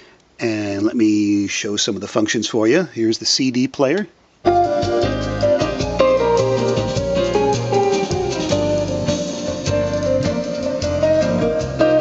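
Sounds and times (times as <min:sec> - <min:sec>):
guitar-led music on loudspeakers: 0:04.5 - 0:12.0.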